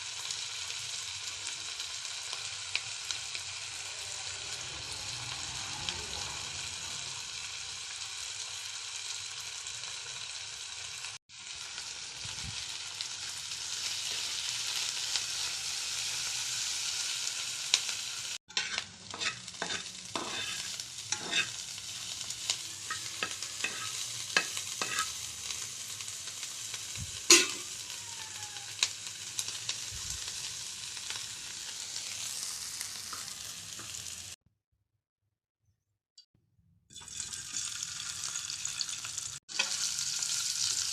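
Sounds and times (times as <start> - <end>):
food sizzling in oil: 0.0 - 34.4, 36.9 - 40.9
spatula scraping pan: 18.5 - 21.8, 22.8 - 25.2, 27.3 - 27.8.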